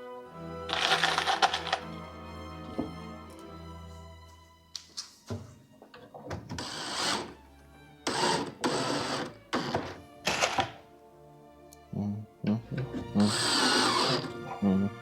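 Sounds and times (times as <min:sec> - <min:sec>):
background music: 0:00.0 - 0:15.0
cordless drill driving screws: 0:06.6 - 0:07.4, 0:08.1 - 0:09.9, 0:13.2 - 0:14.4.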